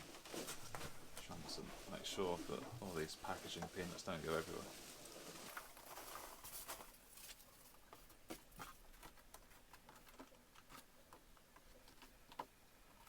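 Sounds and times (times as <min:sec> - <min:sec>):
packing peanuts rustling: 0:00.0 - 0:12.2.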